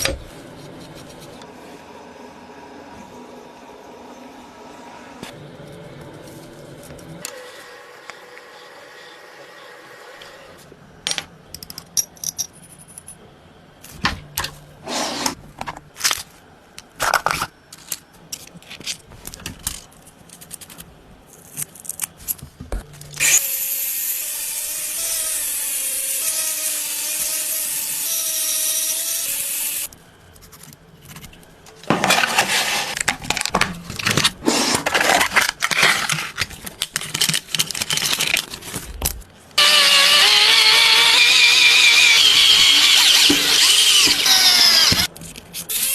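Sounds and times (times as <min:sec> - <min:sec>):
power tool running: 0:23.2 - 0:29.9, 0:39.6 - 0:45.1.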